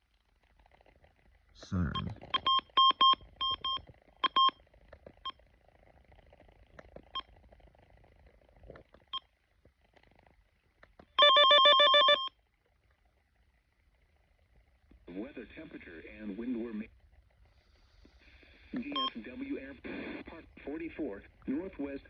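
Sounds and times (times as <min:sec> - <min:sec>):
short electronic beeps: 0:11.2 - 0:12.3.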